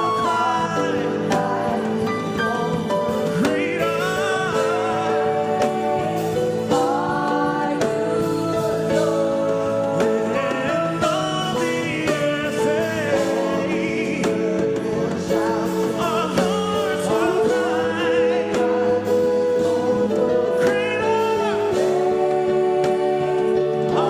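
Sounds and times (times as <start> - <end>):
voices singing gospel song: 0.0 - 24.0.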